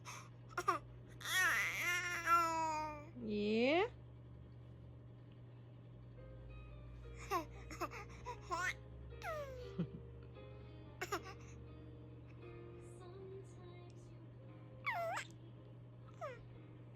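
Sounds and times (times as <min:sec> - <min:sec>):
soft background music: 0:00.1 - 0:04.3, 0:04.9 - 0:16.9
low hum: 0:02.8 - 0:16.9
baby squealing: 0:14.8 - 0:15.3.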